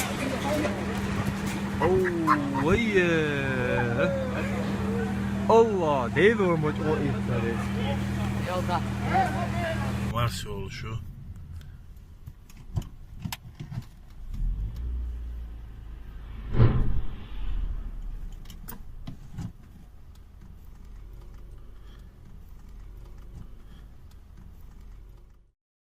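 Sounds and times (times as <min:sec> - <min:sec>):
low rumble: 0:14.2 - 0:20.1
explosion boom: 0:15.8 - 0:19.0.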